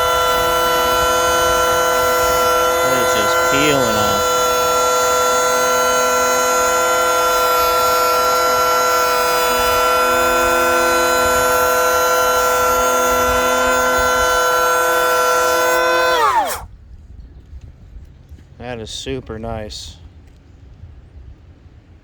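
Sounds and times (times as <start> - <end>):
electric planer whining: 0.0 - 16.7.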